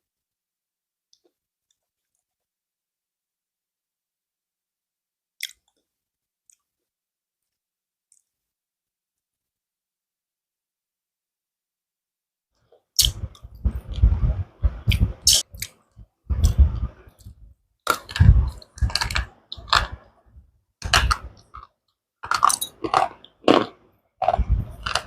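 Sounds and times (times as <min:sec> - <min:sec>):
slate pencils being chewed: 0:16.4 - 0:20.0, 0:20.8 - 0:25.0.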